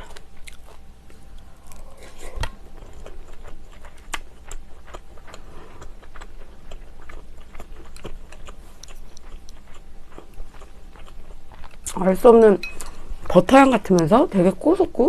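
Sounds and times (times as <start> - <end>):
chewing with wet mouth clicks: 0.0 - 12.0.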